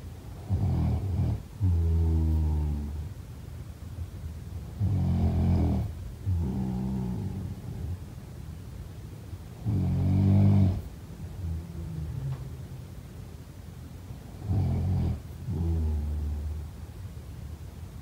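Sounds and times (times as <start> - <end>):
person snoring: 0.4 - 3.0, 4.8 - 7.8, 9.6 - 12.3, 14.4 - 16.6.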